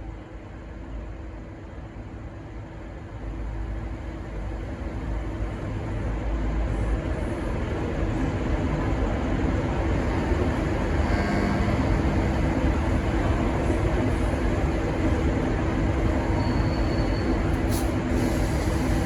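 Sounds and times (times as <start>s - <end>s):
locomotive diesel engine rumble: 3.1s - 19.0s.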